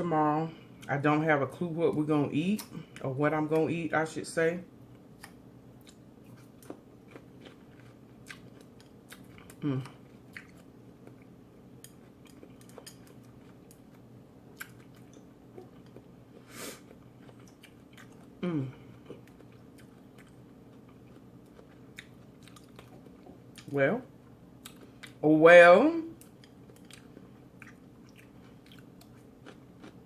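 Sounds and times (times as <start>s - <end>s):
person chewing food: 4.9s - 25.2s, 26.2s - 30.0s
short vocal hum: 9.6s - 10.0s, 18.4s - 18.9s.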